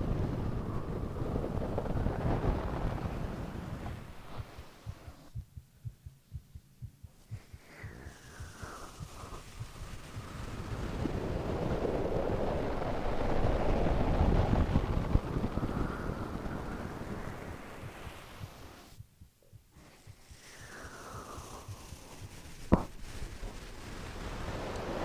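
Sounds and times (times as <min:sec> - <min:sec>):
heartbeat thumps: 0:03.8 - 0:11.1, 0:14.5 - 0:23.1
rushing breathing: 0:07.1 - 0:11.0, 0:19.7 - 0:22.7.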